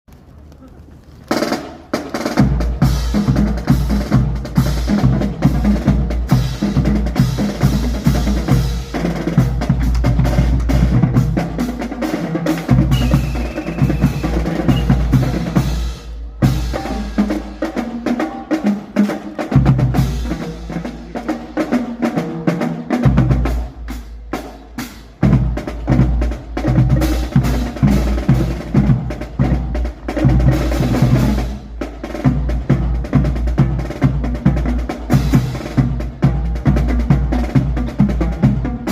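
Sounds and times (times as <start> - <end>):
drum-heavy music: 2.2 - 38.9.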